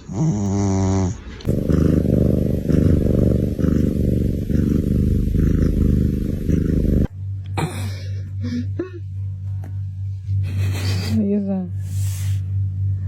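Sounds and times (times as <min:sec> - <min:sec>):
cat purring: 0:00.0 - 0:07.1
steady low hum: 0:00.0 - 0:13.0.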